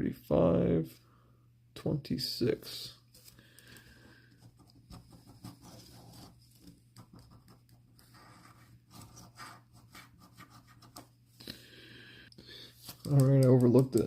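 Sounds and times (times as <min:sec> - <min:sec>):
scratching lottery ticket coating: 0:12.8 - 0:14.0.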